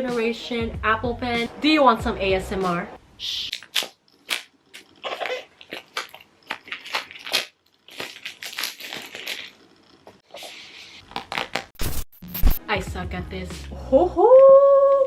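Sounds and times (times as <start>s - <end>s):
cardboard packaging crinkling: 3.5s - 12.2s.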